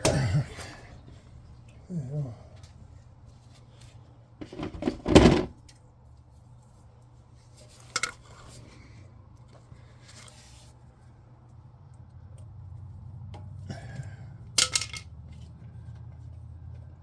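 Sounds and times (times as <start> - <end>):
metal tools clattering: 14.6 - 15.1.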